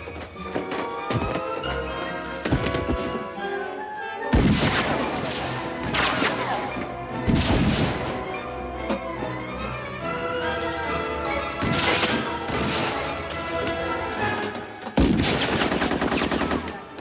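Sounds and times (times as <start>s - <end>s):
film score music: 0.0s - 17.0s.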